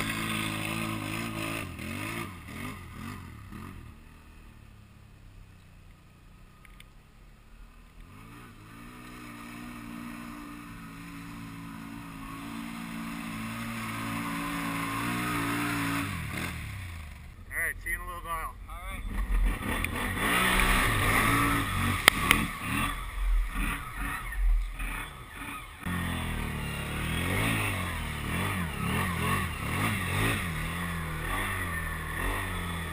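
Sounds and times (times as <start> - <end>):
atv engine revving: 0.0 - 32.9.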